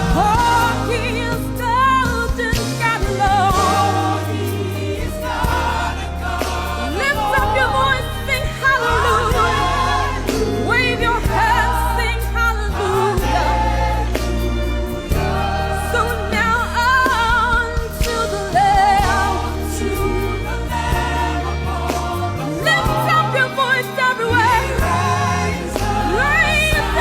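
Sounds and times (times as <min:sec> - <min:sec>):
band with sustained bass: 0:00.0 - 0:27.0
gospel singers with vibrato: 0:00.0 - 0:27.0.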